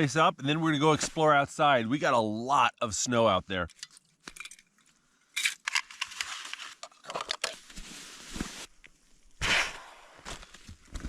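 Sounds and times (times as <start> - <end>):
camping gear rustling and crinkling: 3.6 - 11.0.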